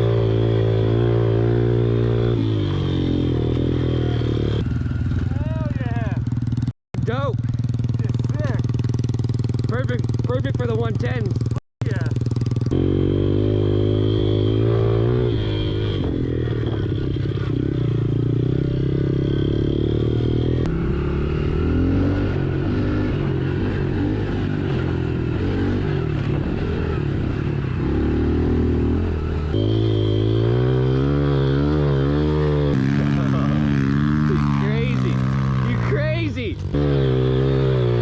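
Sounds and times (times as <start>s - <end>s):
motorbike engines revving: 0.0s - 38.0s.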